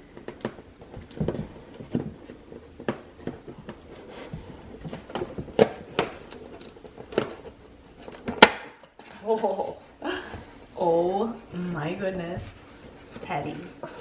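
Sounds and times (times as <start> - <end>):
clicks taps and rustles: 0.1 - 9.6.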